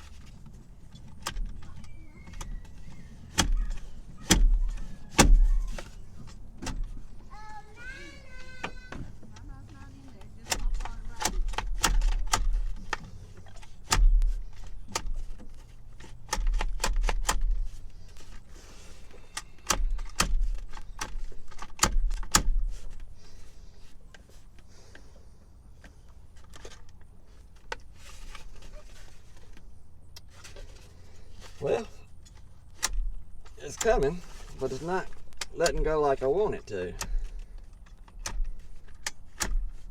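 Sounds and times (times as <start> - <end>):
seatbelt latch clicking and rattling: 0.0 - 7.0, 10.1 - 18.4, 19.1 - 23.1, 32.2 - 39.9
faint handling noise: 0.0 - 39.9.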